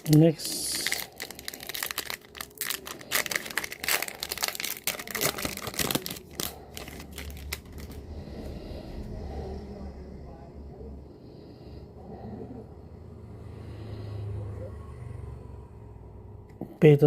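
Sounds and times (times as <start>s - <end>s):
foil wrapper crinkling and tearing: 0.0s - 8.0s.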